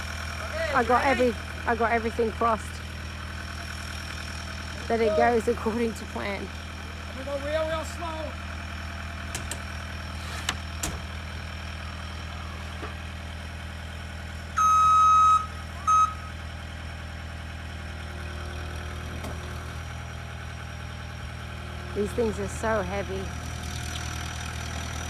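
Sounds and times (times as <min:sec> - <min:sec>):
vehicle engine running: 0:00.0 - 0:25.0
high beeps: 0:14.6 - 0:16.4.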